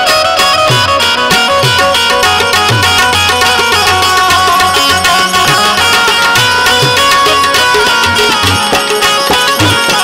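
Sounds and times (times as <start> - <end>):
sustained melody line: 0.0 - 10.0
tabla drum strokes: 0.0 - 10.0.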